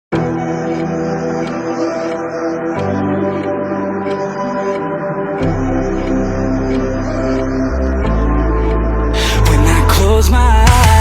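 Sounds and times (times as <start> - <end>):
held low bass: 5.4 - 11.0
person singing: 8.1 - 11.0
drums: 10.6 - 11.0.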